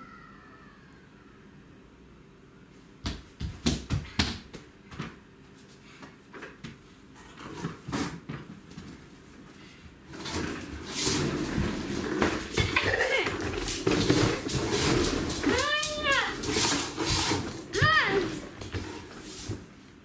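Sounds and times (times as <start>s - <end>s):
knocks and thumps: 11.0s - 19.1s.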